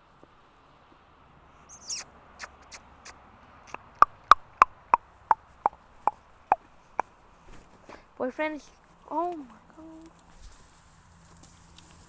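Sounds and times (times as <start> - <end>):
animal yipping calls: 1.7 - 7.1
rustling scrape: 7.4 - 8.0, 10.2 - 12.0.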